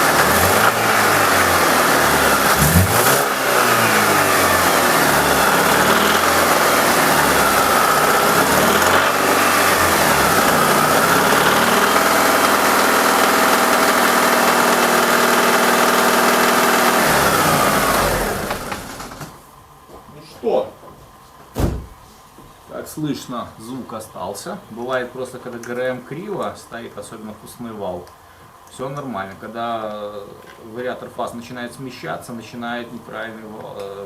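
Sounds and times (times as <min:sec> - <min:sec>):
car engine revving and idling: 0:00.0 - 0:19.4
engine knocking: 0:00.0 - 0:19.4.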